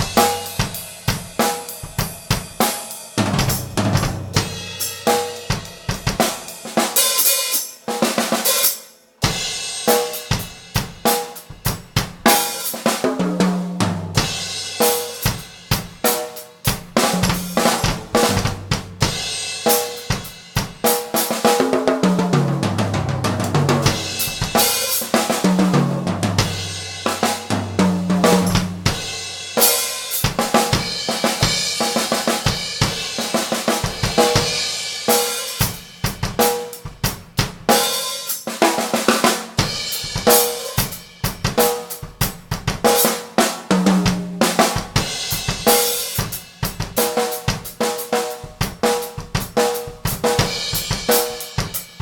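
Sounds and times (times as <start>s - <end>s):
drum kit: 0.0s - 52.0s
bass line: 17.1s - 19.0s.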